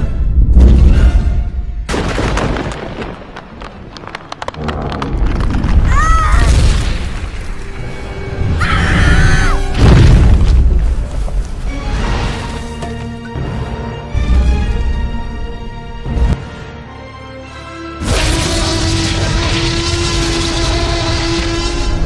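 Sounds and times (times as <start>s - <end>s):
dramatic film music: 0.0s - 2.5s, 4.6s - 22.0s
dinosaur booms and rumbles: 4.4s - 7.4s.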